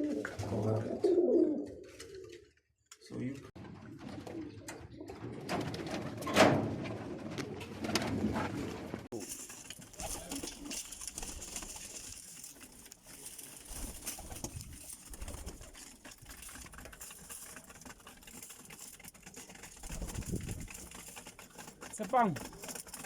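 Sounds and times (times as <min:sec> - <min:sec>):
pigeons cooing: 0:00.0 - 0:02.5
rustling: 0:08.4 - 0:23.0.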